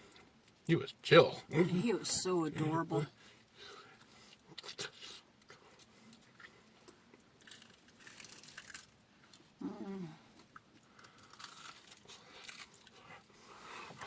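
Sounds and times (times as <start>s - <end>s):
person chewing food: 3.4s - 14.0s.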